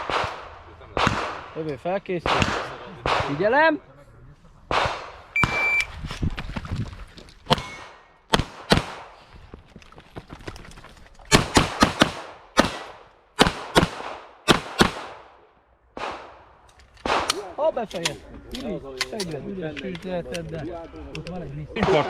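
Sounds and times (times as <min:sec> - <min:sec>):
pistol shots: 0:00.0 - 0:03.4, 0:07.5 - 0:09.2, 0:11.3 - 0:15.4, 0:17.0 - 0:17.5
shot timer beep: 0:05.4 - 0:05.9.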